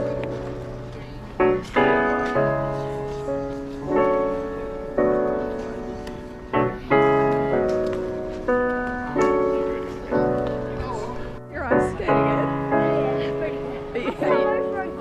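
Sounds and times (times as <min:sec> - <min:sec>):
slow piano chords: 0:00.0 - 0:15.0.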